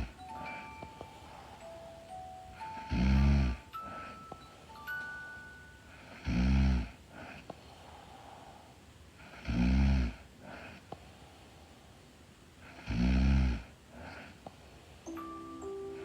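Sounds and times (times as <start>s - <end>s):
chime-like musical tones: 0.0s - 5.9s, 15.1s - 16.0s
soft breathing: 0.0s - 16.0s
woman snoring: 2.6s - 4.2s, 6.0s - 7.4s, 9.2s - 10.8s, 12.7s - 14.3s.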